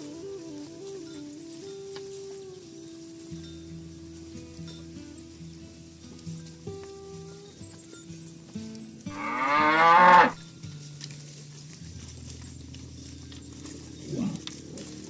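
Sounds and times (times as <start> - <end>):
cow mooing: 9.1 - 10.4.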